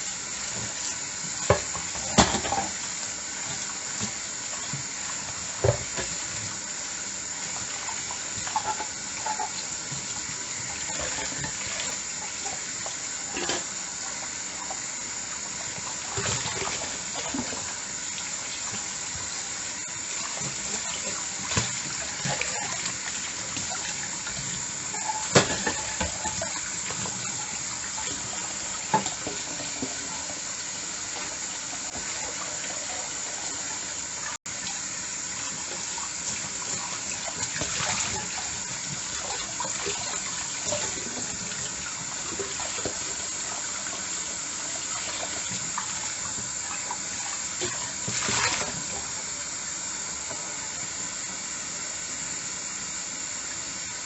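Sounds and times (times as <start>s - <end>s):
tap water running into sink: 0.0s - 50.8s.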